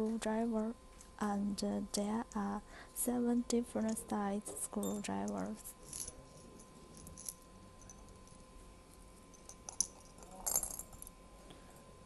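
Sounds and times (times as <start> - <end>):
hand tools clicking and clinking: 4.8 - 8.4, 9.3 - 11.1.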